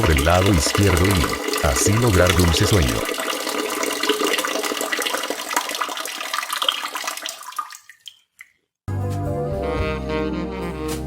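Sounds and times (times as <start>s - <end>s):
toilet flushing: 0.0s - 8.1s.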